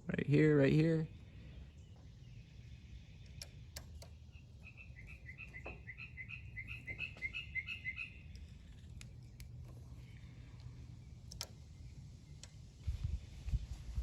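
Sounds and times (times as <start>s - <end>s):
sharp clicks: 3.2s - 4.2s, 10.6s - 11.6s.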